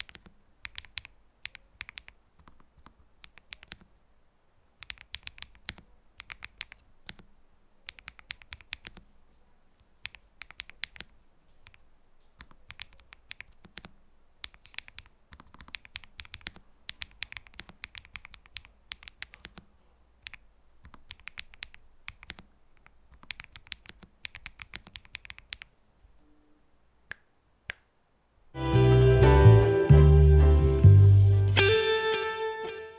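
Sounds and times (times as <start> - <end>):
mechanical keyboard typing: 0.0 - 3.9, 4.8 - 7.3, 7.9 - 9.1, 10.0 - 11.8, 12.4 - 25.7.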